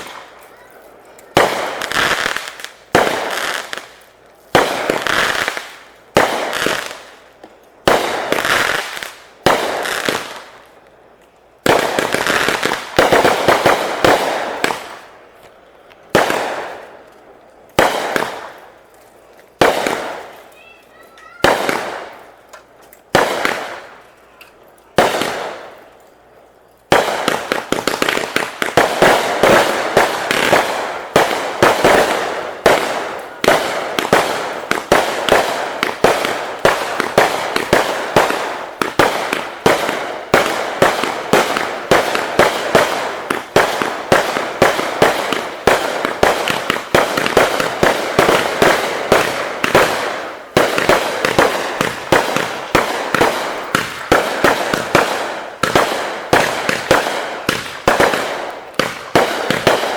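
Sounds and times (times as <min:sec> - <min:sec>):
fireworks bangs and crackling pops: 0:00.0 - 0:59.9.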